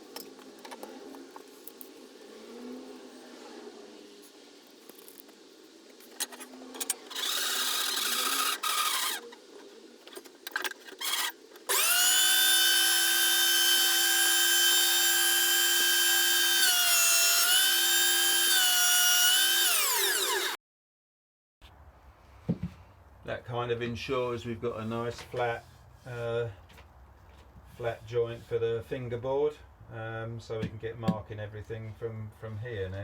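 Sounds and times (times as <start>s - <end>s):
power tool whining: 6.2s - 9.4s, 10.6s - 20.6s
scraping and knocking on wood: 22.4s - 22.8s.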